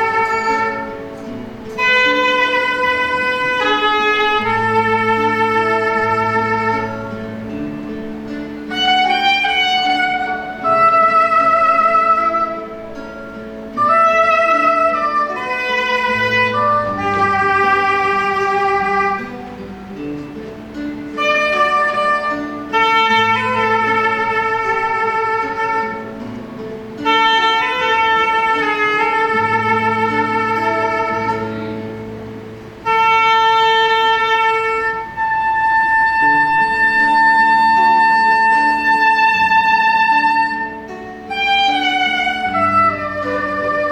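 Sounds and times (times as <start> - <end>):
soprano saxophone melody: 0.0 - 43.9
sustained accompaniment with bass: 0.0 - 43.9.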